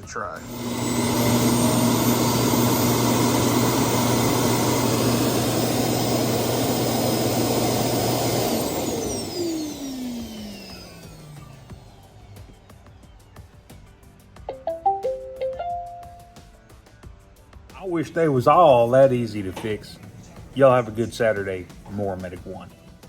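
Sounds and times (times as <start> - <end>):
suction motor running: 0.4 - 12.3
motor spinning down whine: 0.4 - 12.7.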